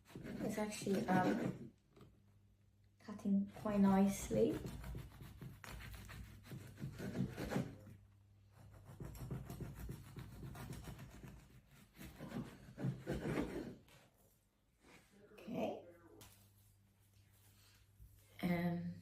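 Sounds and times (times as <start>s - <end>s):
knife sawing through bread: 0.0s - 1.6s, 3.7s - 7.9s, 8.6s - 13.8s.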